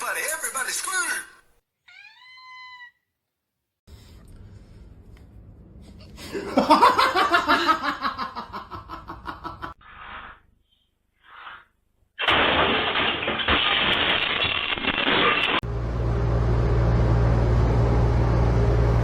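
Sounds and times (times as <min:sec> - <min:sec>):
person laughing hard: 0:06.2 - 0:09.8.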